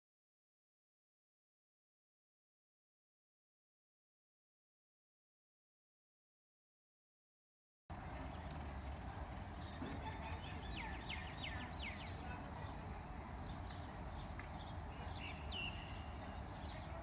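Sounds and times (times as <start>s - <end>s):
outdoor background noise: 7.9s - 17.0s.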